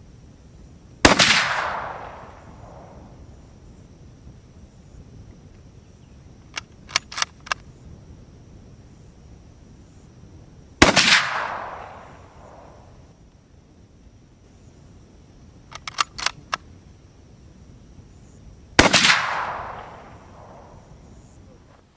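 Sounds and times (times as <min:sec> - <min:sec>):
loud gunshot echoing: 0:01.0 - 0:03.0, 0:10.8 - 0:12.7, 0:18.8 - 0:20.8
sharp clicks: 0:06.4 - 0:07.7, 0:15.7 - 0:16.7.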